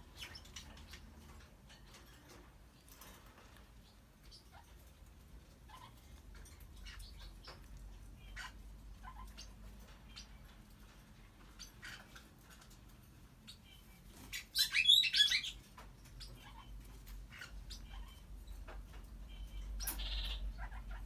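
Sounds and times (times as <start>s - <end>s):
parrot high-pitched call: 14.5s - 15.6s, 19.8s - 21.0s.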